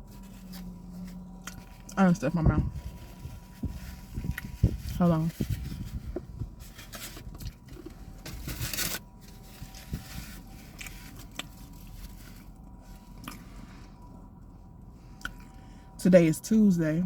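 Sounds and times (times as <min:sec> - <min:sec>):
crinkling rustle: 0:02.7 - 0:14.2
chewing and eating: 0:10.6 - 0:14.2, 0:15.2 - 0:15.7.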